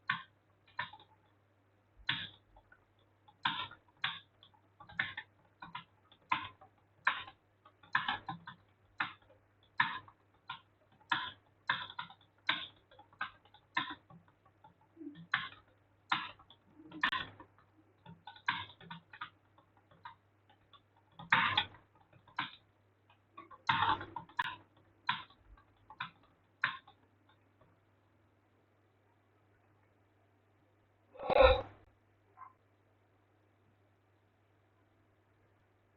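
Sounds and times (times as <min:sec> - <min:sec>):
keyboard typing clicks: 0:02.0 - 0:27.7.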